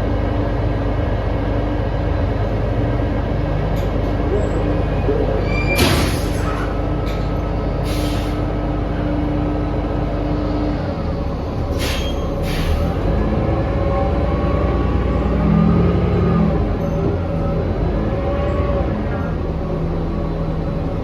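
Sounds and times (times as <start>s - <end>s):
bus engine running loudly: 0.0s - 21.0s
short hisses of air: 7.8s - 8.5s.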